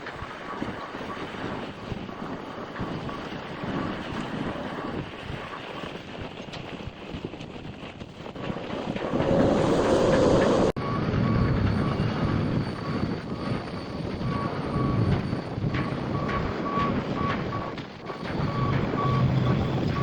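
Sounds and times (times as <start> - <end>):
wind buffeting microphone: 0.0 - 20.0
machine warning beeper: 8.9 - 20.0.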